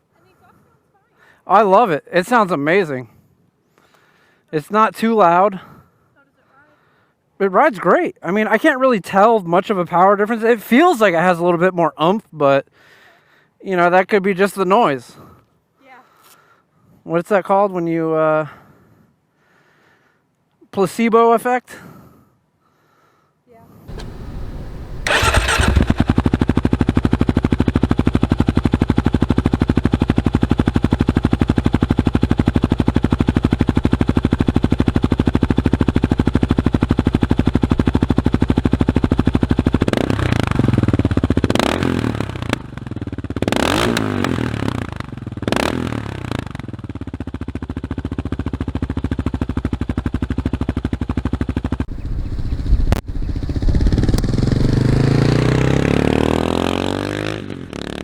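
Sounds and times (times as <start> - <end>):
motorcycle engine revving: 23.9 - 58.0.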